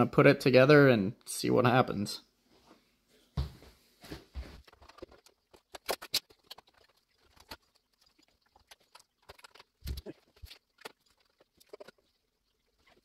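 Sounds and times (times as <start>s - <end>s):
computer parts being handled: 4.6s - 12.1s.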